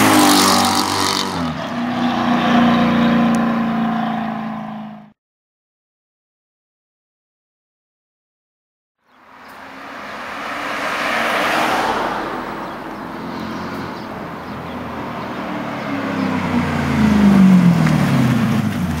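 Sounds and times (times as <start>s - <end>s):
car engine and exhaust revving: 0.0s - 5.1s, 9.3s - 19.0s.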